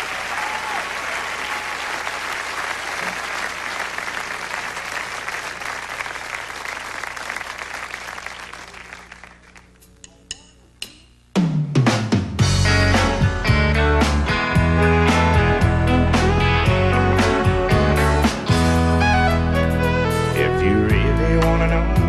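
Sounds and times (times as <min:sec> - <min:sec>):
audience applauding: 0:00.0 - 0:09.8.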